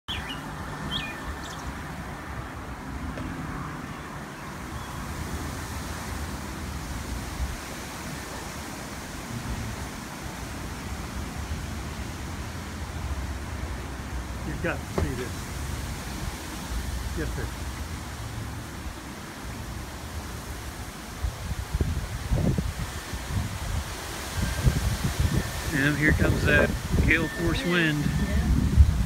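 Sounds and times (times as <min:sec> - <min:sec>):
wind across microphone: 0:04.7 - 0:13.5, 0:19.6 - 0:29.0.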